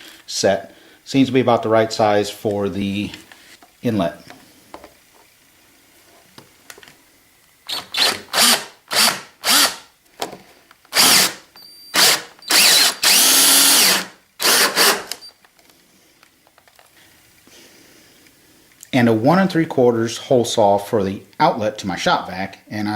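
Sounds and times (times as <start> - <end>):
electric drill cutting plastic: 7.7 - 9.9, 10.9 - 15.3.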